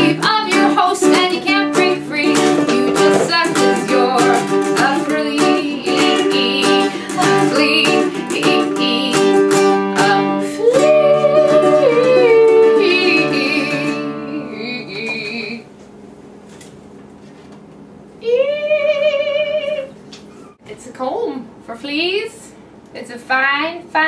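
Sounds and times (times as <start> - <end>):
strummed acoustic string instrument: 0.0 - 14.5
woman singing: 0.0 - 15.7, 18.2 - 20.0.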